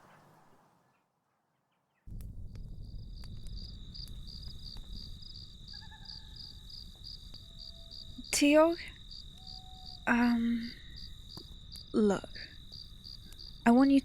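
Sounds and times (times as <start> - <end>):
low rumble: 2.1 - 8.2
cricket trilling: 2.7 - 14.0
faint clicks: 11.3 - 11.9.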